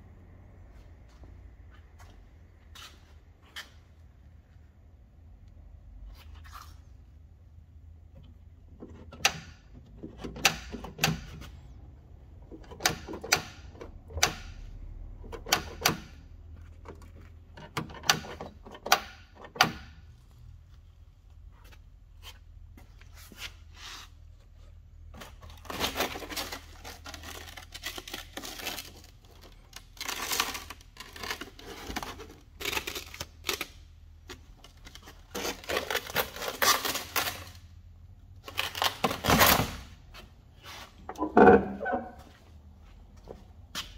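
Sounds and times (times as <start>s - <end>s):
parts rattling and scraping: 8.1s - 37.8s, 38.4s - 43.9s
sharp clicks and knocks: 12.4s - 14.6s.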